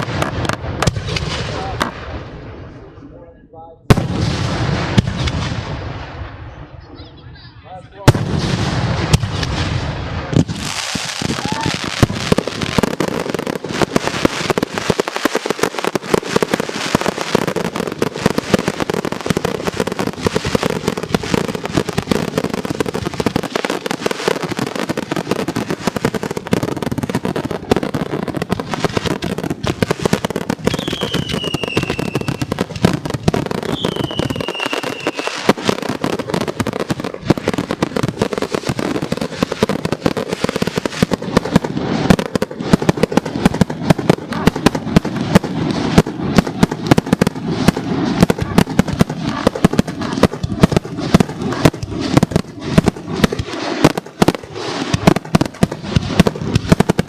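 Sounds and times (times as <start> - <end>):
fireworks booms and crackles: 0.0 - 7.4, 8.0 - 57.0
falling firework whistles: 30.6 - 32.6, 33.6 - 35.6.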